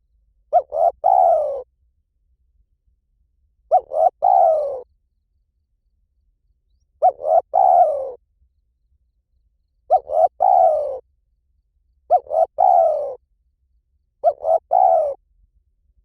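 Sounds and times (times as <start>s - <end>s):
dove cooing: 0.5s - 1.7s, 3.7s - 4.9s, 7.0s - 8.2s, 9.9s - 11.0s, 12.1s - 13.2s, 14.2s - 15.2s.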